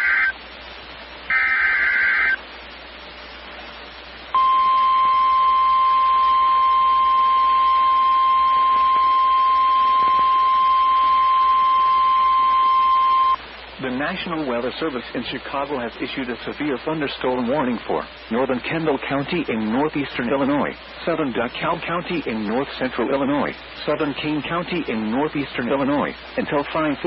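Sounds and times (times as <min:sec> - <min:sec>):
steady warning alarm tone: 0:00.0 - 0:00.4, 0:01.3 - 0:02.4, 0:04.3 - 0:13.4
two-tone data burst: 0:00.0 - 0:00.4, 0:01.3 - 0:02.4, 0:04.4 - 0:13.4.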